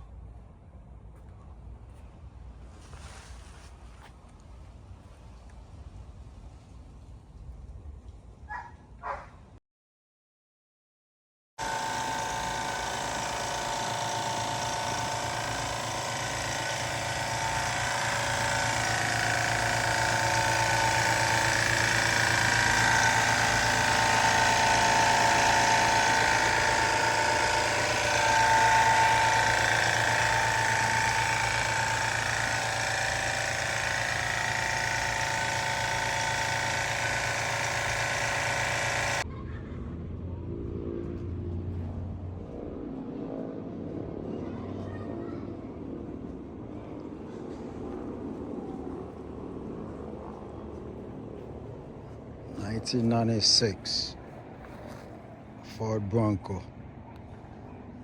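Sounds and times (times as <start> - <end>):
car engine running: 11.6 - 39.2.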